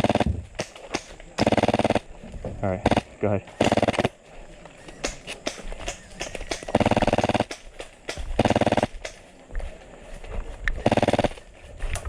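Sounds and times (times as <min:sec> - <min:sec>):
airsoft gun full-auto bursts: 0:00.0 - 0:02.1, 0:02.8 - 0:04.1, 0:05.0 - 0:09.2, 0:10.8 - 0:11.4
sharp clicks: 0:00.0 - 0:02.1, 0:02.8 - 0:04.2, 0:04.9 - 0:09.2.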